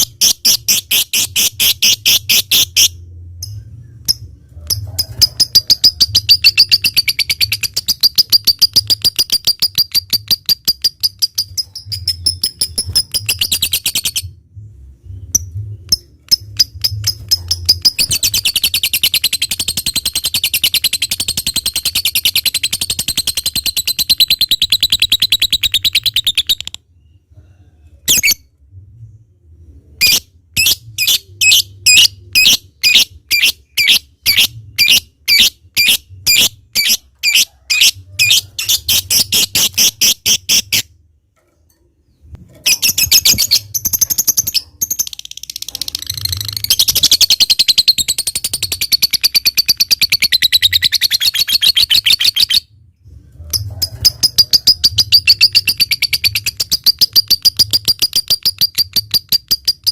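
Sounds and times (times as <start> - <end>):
lovebird chattering trill: 15.4 - 26.8, 30.0 - 40.8
sharp bird chirps: 16.0 - 27.2.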